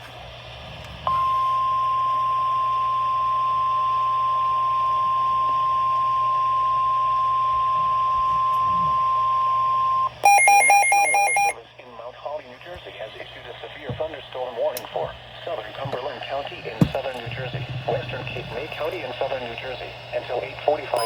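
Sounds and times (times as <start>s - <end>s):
faint radio hiss: 11.3s - 21.0s.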